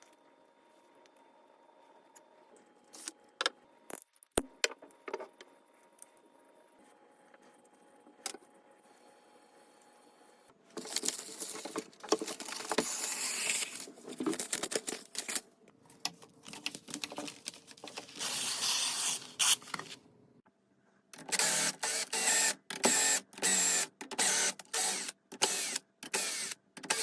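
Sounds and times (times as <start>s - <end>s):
rustling and scraping: 10.7s - 18.5s.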